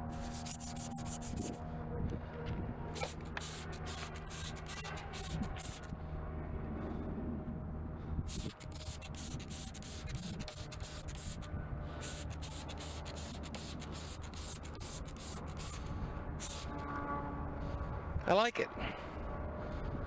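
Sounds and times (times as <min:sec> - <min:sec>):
sandpaper rasping on plastic: 0:00.0 - 0:01.6, 0:03.0 - 0:05.9, 0:08.3 - 0:16.8
steady low hum: 0:00.0 - 0:20.0.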